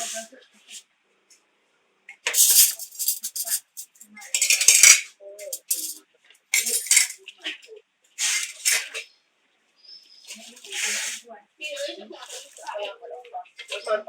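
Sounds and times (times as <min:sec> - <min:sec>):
metal utensils scraping cookware: 0:02.3 - 0:06.0, 0:06.6 - 0:07.2.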